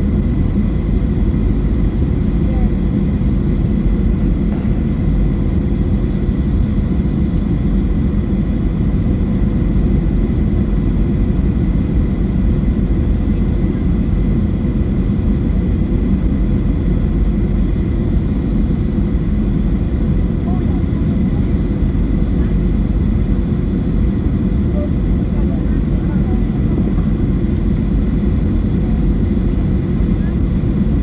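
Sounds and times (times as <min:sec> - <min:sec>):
airplane cabin engine rumble: 0:00.0 - 0:31.0.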